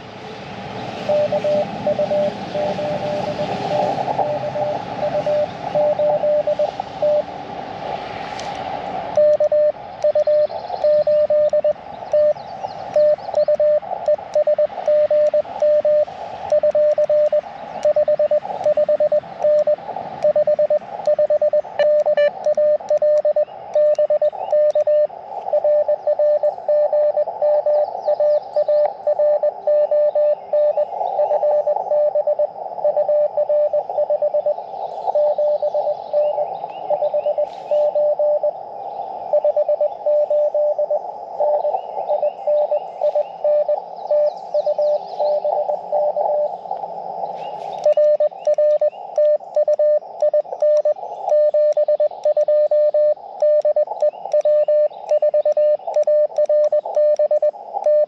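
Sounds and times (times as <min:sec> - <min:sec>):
radio band hiss: 0:00.0 - 0:58.0
morse code tone: 0:01.1 - 0:07.3, 0:09.1 - 0:38.5, 0:39.3 - 0:46.5, 0:47.6 - 0:58.0.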